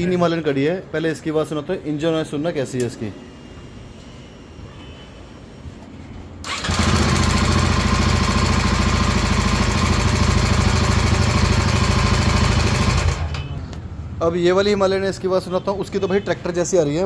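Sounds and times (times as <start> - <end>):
motorcycle engine running: 6.5 - 13.3.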